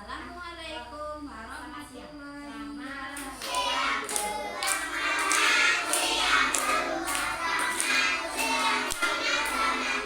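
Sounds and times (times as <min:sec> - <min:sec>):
children singing: 0:03.3 - 0:10.0
hand clapping: 0:03.4 - 0:10.0.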